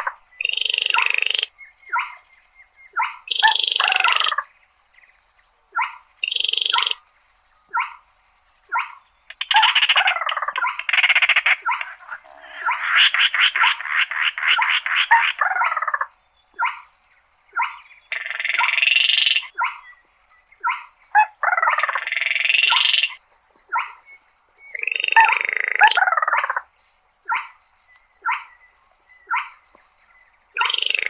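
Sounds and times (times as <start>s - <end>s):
bird calling with dry rattling trills: 0.0s - 31.0s.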